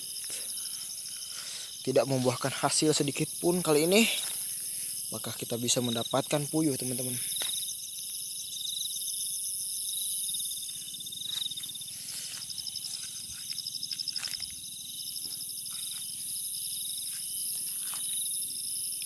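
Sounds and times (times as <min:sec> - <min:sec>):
crickets trilling: 0:00.0 - 0:19.0
rustles and crunches in dry grass: 0:10.5 - 0:18.4.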